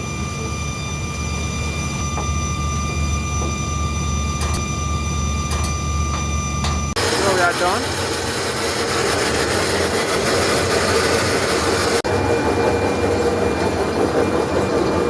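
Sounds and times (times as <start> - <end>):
electric motor droning: 0.0 - 12.0.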